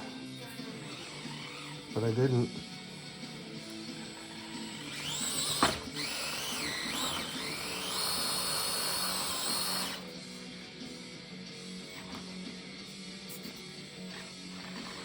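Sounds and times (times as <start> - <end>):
electric motor whining: 0.0 - 10.6, 11.6 - 15.0
background music: 0.0 - 15.0.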